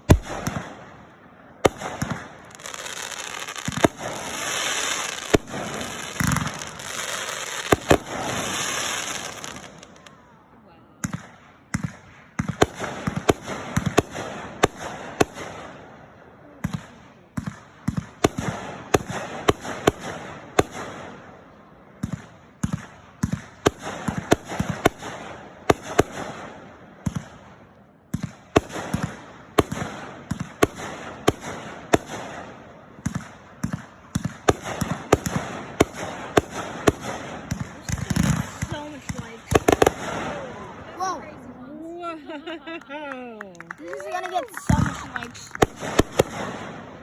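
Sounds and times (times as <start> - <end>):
firework crackling: 1.6 - 10.3, 28.5 - 42.9, 43.5 - 47.0.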